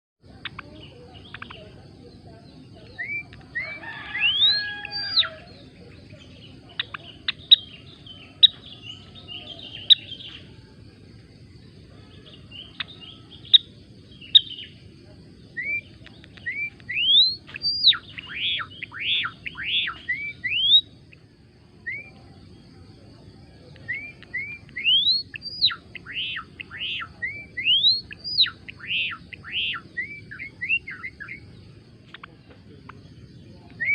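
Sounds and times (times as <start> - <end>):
bird singing: 0.2 - 33.9
quick arching chirps: 0.4 - 22.8, 23.6 - 33.9
thin upward whistles: 15.5 - 20.9, 23.8 - 31.5.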